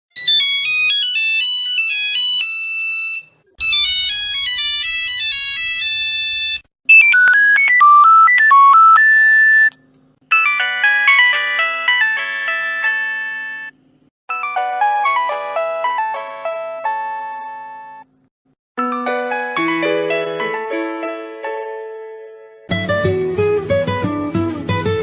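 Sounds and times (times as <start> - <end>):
phone ringtone melodies: 0.2 - 18.0, 18.8 - 20.7.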